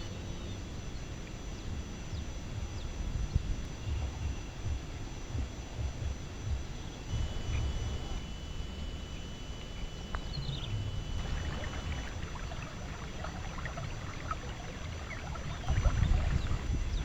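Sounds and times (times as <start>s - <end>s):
thin steady high tone: 0.0s - 17.0s
faint high chirps: 7.1s - 17.0s
wind buffeting microphone: 9.9s - 17.0s.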